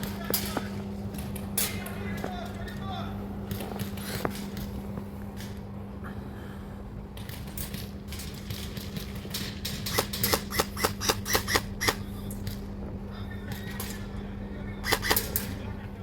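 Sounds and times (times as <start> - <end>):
airsoft gun shots: 9.9 - 12.0, 14.8 - 15.4.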